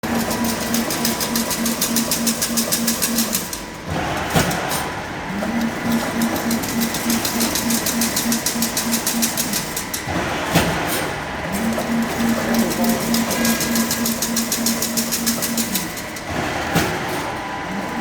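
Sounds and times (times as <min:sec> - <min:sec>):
fence machine rhythmic clatter: 0:00.0 - 0:18.0.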